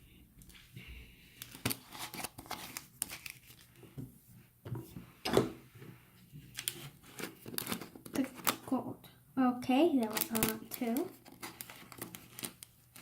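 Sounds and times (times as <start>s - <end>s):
crinkling and clicking of supplies: 1.3s - 4.1s, 6.4s - 8.8s, 10.0s - 13.0s.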